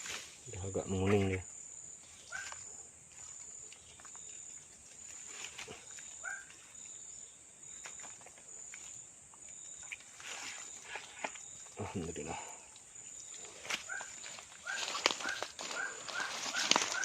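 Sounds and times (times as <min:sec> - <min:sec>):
insects trilling: 0:00.0 - 0:17.0.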